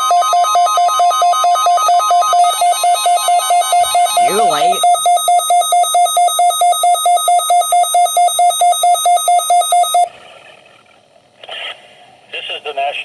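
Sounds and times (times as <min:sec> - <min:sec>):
weather radio alert beeping: 0:02.4 - 0:10.1.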